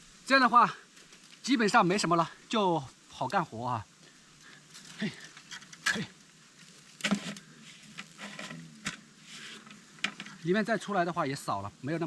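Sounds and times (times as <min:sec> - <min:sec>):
hornets buzzing: 0:00.0 - 0:12.0
knocks and rustles: 0:06.6 - 0:10.4.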